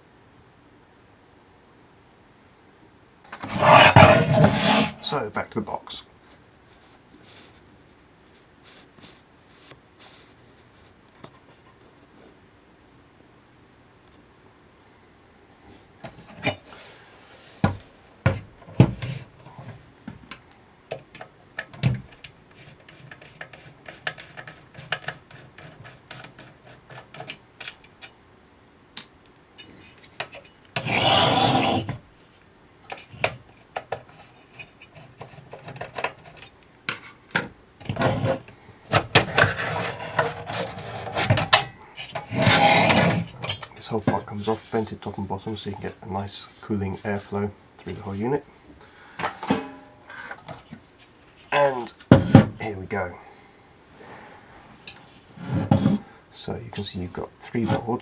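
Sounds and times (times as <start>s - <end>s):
metal scraping: 3.3s - 5.2s, 30.4s - 32.0s, 39.1s - 46.0s
metal cover rattling: 37.4s - 44.7s, 49.2s - 50.6s.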